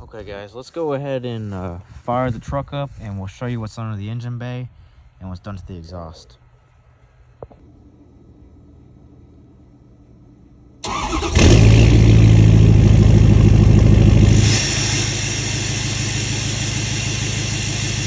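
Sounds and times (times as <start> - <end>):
diesel engine cranking: 10.8 - 18.0
diesel engine idling: 10.8 - 18.0.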